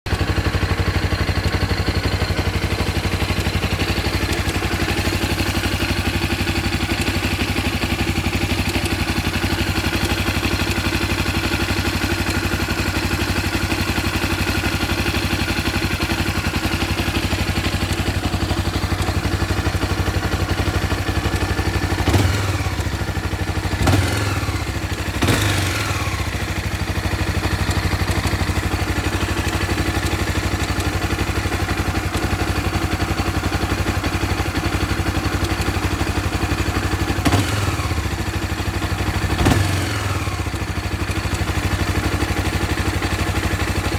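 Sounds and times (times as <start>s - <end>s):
motorcycle engine idling: 0.0s - 43.9s.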